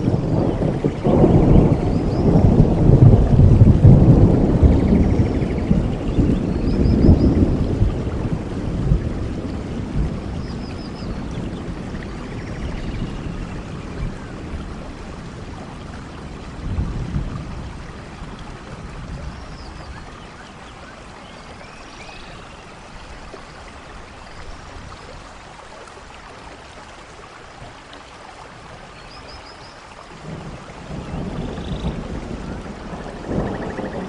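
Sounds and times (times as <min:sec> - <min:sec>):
low thunder rumbling: 0:00.0 - 0:20.2, 0:30.2 - 0:34.0
heavy rain: 0:00.0 - 0:34.0.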